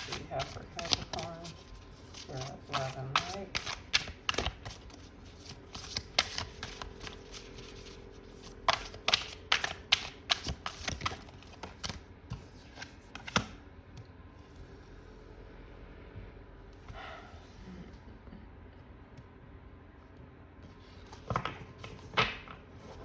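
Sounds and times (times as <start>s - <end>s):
cards being shuffled: 0.0s - 13.6s, 20.8s - 23.0s.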